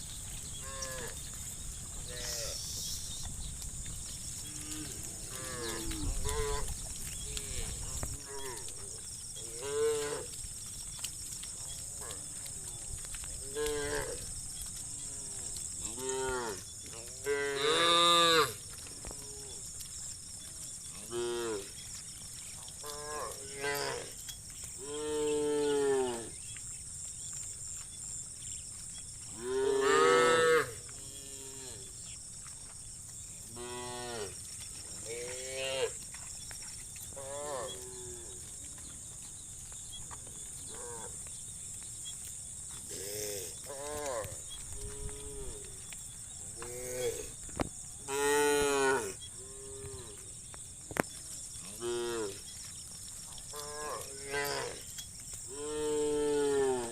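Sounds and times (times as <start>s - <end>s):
steady high-pitched hiss: 0.0s - 56.9s
cows mooing: 4.4s - 10.4s, 13.4s - 14.3s, 14.9s - 18.6s, 21.0s - 21.7s, 22.8s - 24.2s, 24.8s - 26.4s, 29.4s - 31.9s, 37.2s - 38.4s, 48.1s - 50.2s, 53.5s - 54.8s, 55.5s - 56.9s.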